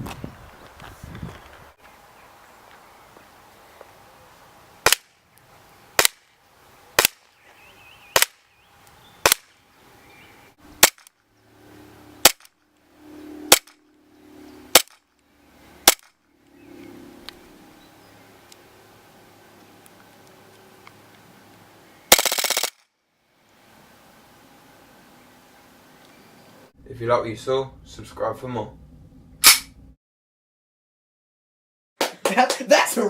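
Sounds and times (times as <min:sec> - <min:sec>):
airsoft pistol shots: 0:04.8 - 0:05.1, 0:06.0 - 0:06.3, 0:07.0 - 0:07.3, 0:08.1 - 0:08.5, 0:09.2 - 0:09.5, 0:10.8 - 0:11.1, 0:12.2 - 0:12.5, 0:13.5 - 0:13.8, 0:14.7 - 0:15.0, 0:15.8 - 0:16.1, 0:22.1 - 0:22.8, 0:29.4 - 0:29.8.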